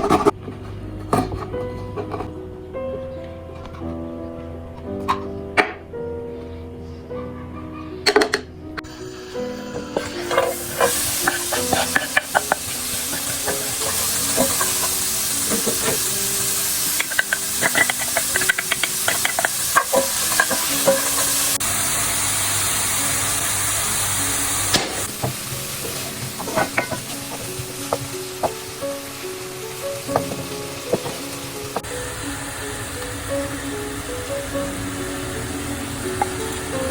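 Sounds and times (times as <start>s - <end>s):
food sizzling in a pan: 8.8s - 36.9s
utensil scraping a pan: 9.4s - 21.6s, 25.0s - 29.0s, 29.9s - 31.9s.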